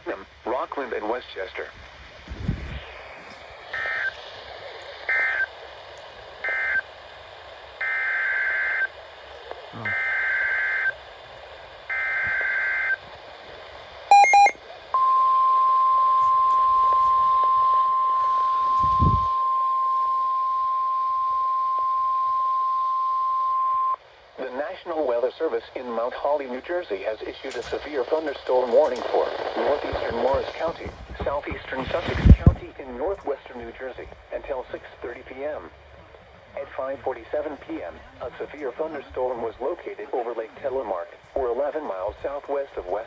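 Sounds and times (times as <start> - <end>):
faint radio hiss: 0.0 - 43.0
steady warning alarm tone: 9.8 - 11.0, 14.1 - 24.0.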